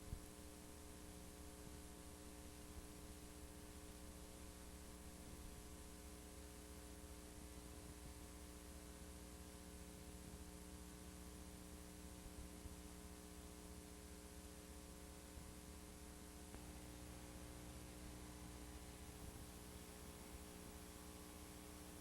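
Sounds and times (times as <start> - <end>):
faint electrical hum with hiss: 0.0 - 22.0.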